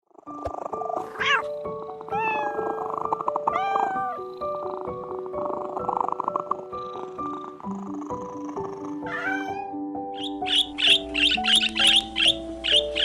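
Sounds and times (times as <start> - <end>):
background music stepping melody: 4.2 - 13.0
pitched animal calls: 9.0 - 13.0.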